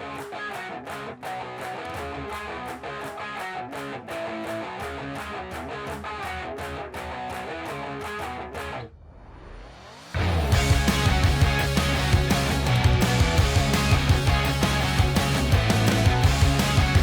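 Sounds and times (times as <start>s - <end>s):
guitar strumming over a beat: 0.0s - 8.8s, 10.2s - 17.0s.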